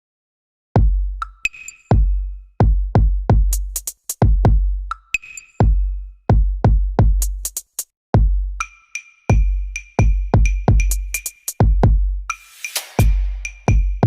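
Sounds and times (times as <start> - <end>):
electronic music with drum beat: 0.8 - 14.0.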